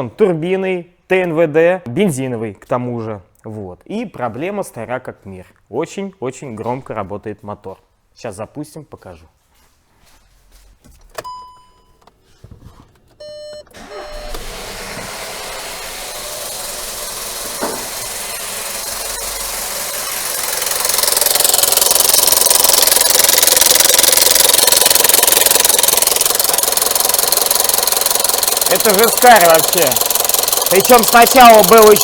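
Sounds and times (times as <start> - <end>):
dashboard chime: 13.2 - 14.3
car engine starting: 13.2 - 32.0
engine chain rattle and knock: 16.4 - 32.0.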